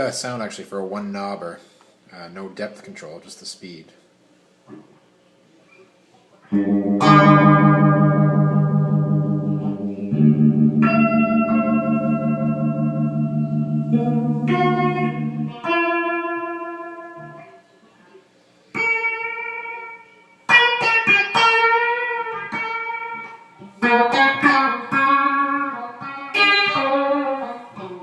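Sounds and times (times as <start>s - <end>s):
electric guitar chords with phaser: 6.5s - 17.5s, 18.8s - 28.0s.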